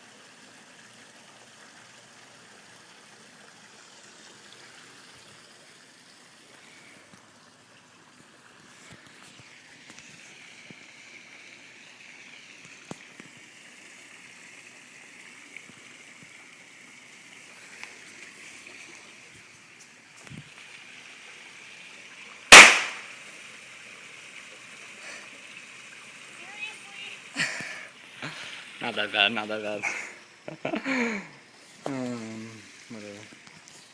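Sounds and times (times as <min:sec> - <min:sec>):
faint steady hiss: 0:00.0 - 0:33.9
firecracker bang: 0:22.5 - 0:23.1.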